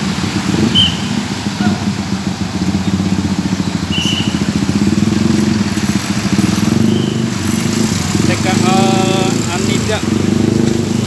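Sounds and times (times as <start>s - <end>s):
bus diesel engine running: 0.0s - 11.0s.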